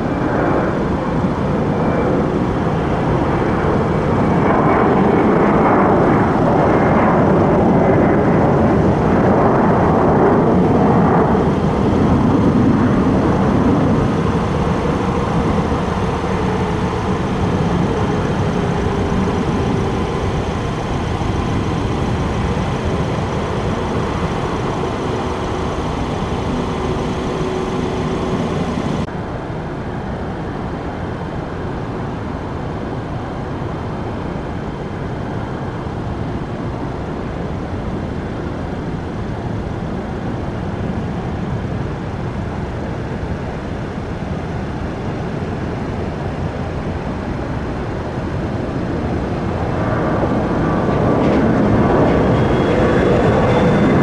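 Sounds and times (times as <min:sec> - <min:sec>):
jet airliner passing: 0:00.0 - 0:54.0.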